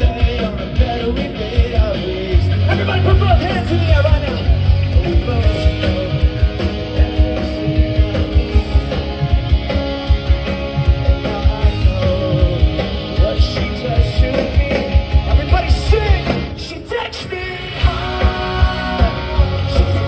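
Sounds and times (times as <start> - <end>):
live rock band playing: 0.0 - 20.0.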